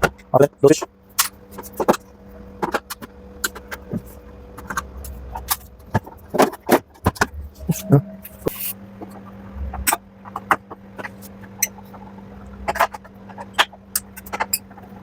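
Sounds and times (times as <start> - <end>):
steady low hum: 0.0 - 15.0
tools clicking and knocking on panels: 12.6 - 15.0.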